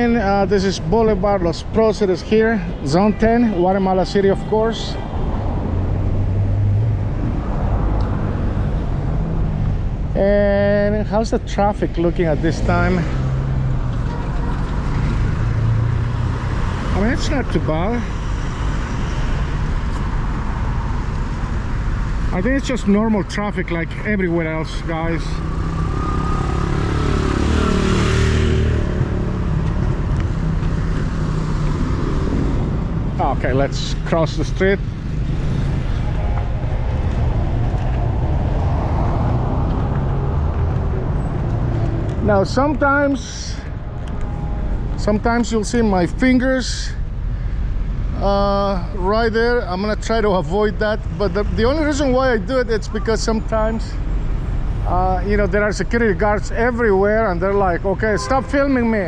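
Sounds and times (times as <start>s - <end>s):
steady traffic rumble: 0.0s - 59.0s
vehicle engines running: 0.0s - 59.0s.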